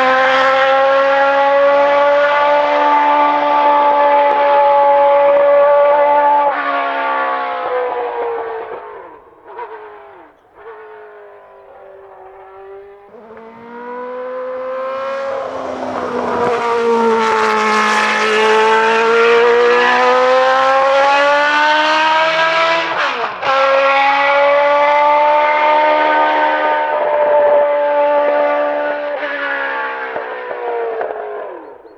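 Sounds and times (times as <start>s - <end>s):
racing car engine at high revs: 0.0s - 31.9s
gear change: 8.6s - 28.5s.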